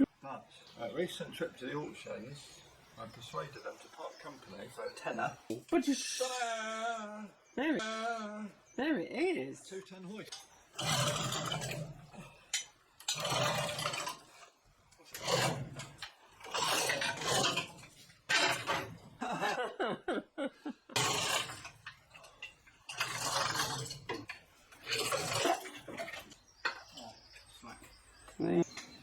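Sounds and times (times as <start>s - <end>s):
hoist chain clinking and rattling: 10.2s - 19.6s, 21.0s - 29.0s.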